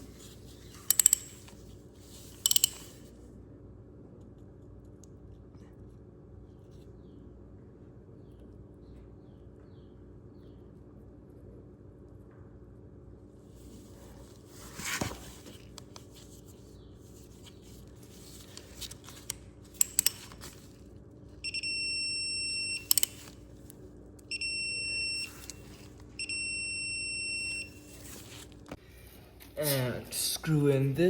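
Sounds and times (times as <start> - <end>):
sharp clicks: 0.9 - 1.5, 2.4 - 3.0, 18.5 - 20.5, 22.8 - 23.4.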